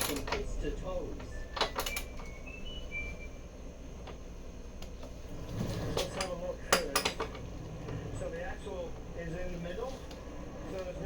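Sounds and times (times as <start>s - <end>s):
metal tools clinking: 0.0s - 0.6s, 1.5s - 2.3s.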